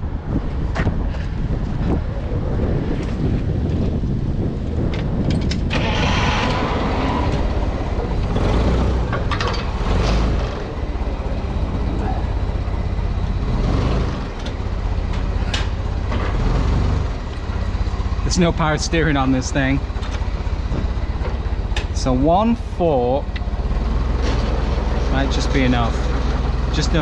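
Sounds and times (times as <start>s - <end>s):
forklift engine running: 3.0s - 27.0s.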